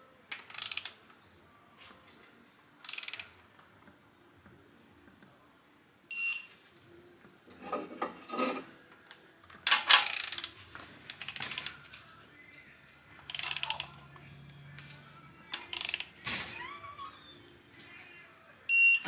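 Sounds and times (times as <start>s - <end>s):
ratchet clicks: 0.4s - 1.0s, 2.8s - 3.4s, 9.7s - 12.0s, 13.2s - 14.0s, 15.6s - 16.2s
metal scraping: 7.5s - 8.8s
metal parts clattering: 9.7s - 12.1s, 13.3s - 14.0s
metal tools clinking: 9.7s - 12.1s, 13.2s - 16.2s.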